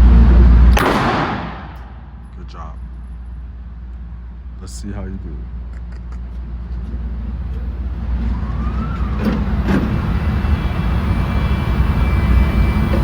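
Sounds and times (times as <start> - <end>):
motorized target carrier rumbling: 5.2 - 13.0.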